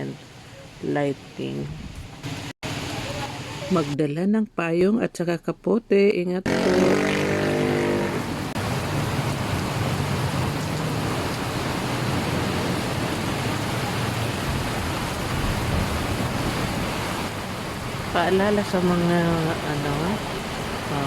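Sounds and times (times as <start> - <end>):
heavy rain hissing: 0.0 - 4.0, 7.2 - 21.0
traffic engines humming: 6.5 - 21.0.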